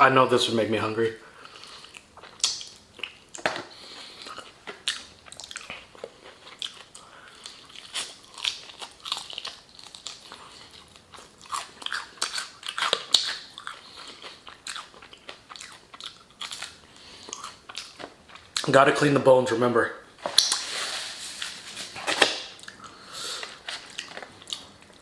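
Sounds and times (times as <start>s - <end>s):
crunching fried chicken: 1.5s - 18.7s.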